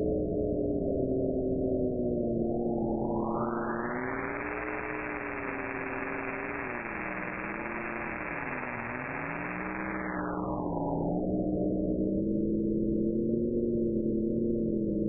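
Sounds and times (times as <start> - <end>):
wavering humming tones: 0.9 - 15.0
radio static hiss: 3.7 - 10.5.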